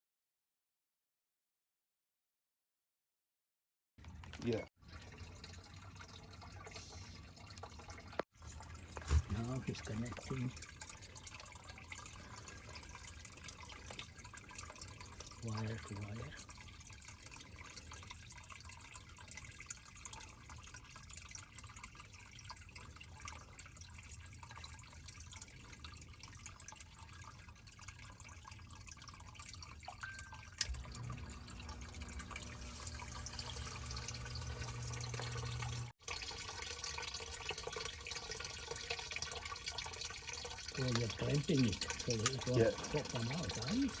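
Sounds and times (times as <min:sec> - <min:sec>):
water trickling and dripping: 0:04.0 - 0:44.0
low steady hum: 0:29.6 - 0:35.9.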